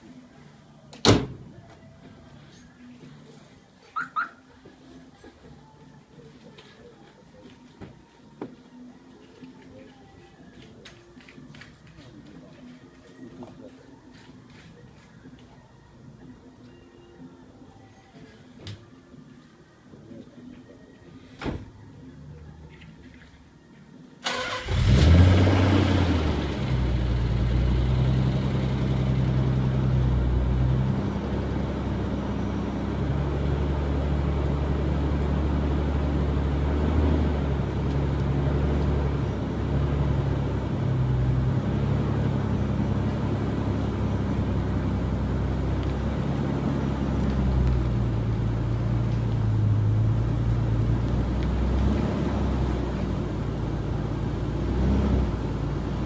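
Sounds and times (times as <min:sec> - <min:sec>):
car engine idling: 0:24.2 - 0:51.7.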